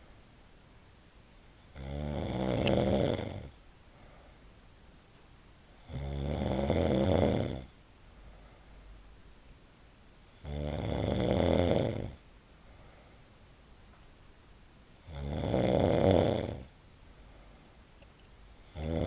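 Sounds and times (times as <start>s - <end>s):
person snoring: 1.7s - 3.6s, 5.8s - 7.7s, 10.4s - 12.2s, 15.0s - 16.7s, 18.6s - 19.0s.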